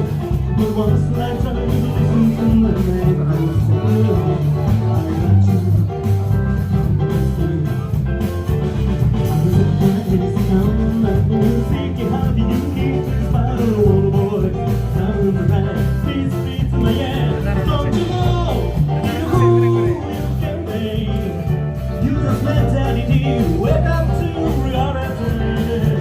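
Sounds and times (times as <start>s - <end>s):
person singing: 0.0s - 8.3s, 9.1s - 26.0s
guitar: 0.0s - 26.0s
steady beat: 0.0s - 26.0s.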